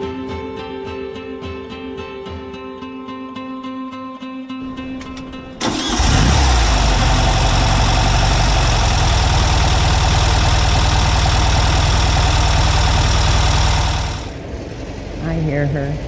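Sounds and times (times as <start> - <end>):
car engine idling: 5.6 - 15.4.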